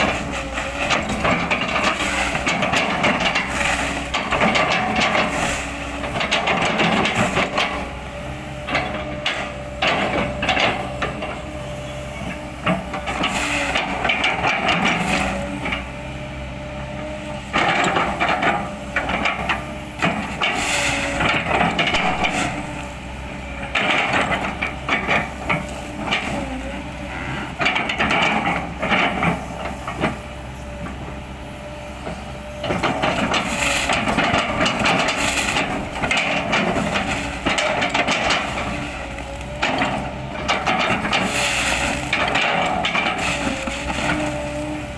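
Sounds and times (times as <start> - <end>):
excavator engine hum and whine: 0.0 - 44.9
wood crackling and crunching: 21.6 - 23.2.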